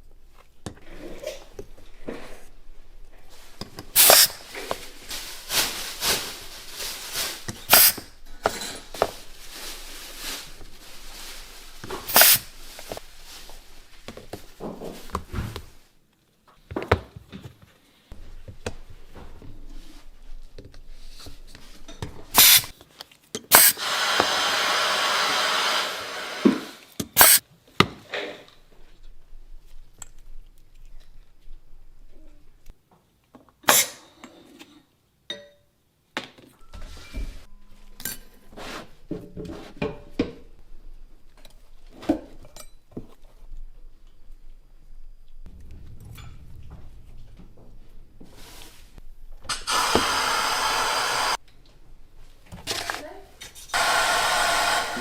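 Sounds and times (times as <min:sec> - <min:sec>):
hand tools clicking and scraping: 0:03.6 - 0:05.0, 0:07.4 - 0:09.1, 0:12.0 - 0:13.0, 0:21.5 - 0:27.4.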